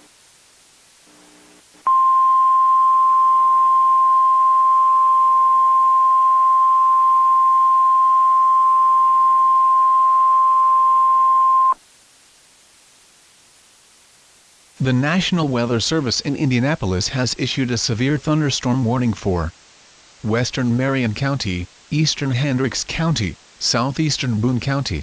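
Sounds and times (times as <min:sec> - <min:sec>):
steady high alarm tone: 0:01.9 - 0:11.8.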